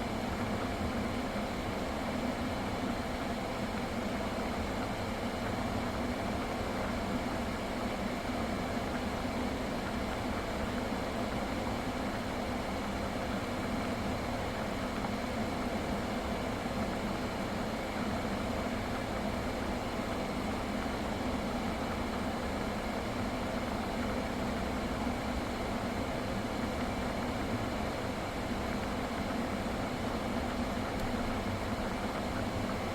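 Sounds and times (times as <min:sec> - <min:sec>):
car idling with air conditioning: 0:11.1 - 0:32.9.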